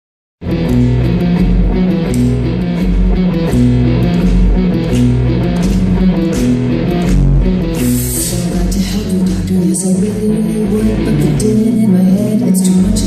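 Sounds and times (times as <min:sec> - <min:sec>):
guitar: 0:00.4 - 0:13.0
live rock music: 0:00.4 - 0:13.0
steady drum beat: 0:00.6 - 0:09.3.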